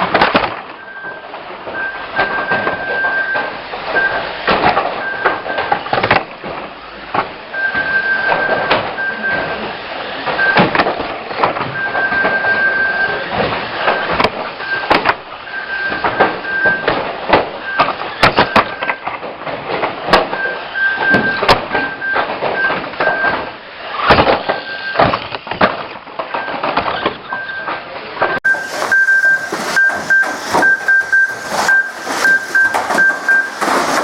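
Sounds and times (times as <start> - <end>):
toy cars colliding: 0.0 - 34.0
steady high tone: 28.4 - 34.0.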